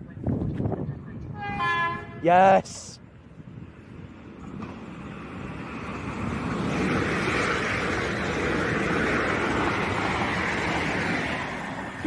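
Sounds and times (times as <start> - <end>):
train passing at speed: 1.3 - 12.0.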